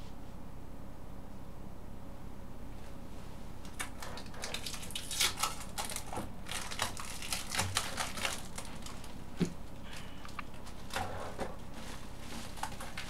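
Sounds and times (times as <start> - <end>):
plastic packaging crinkling: 3.6 - 13.0.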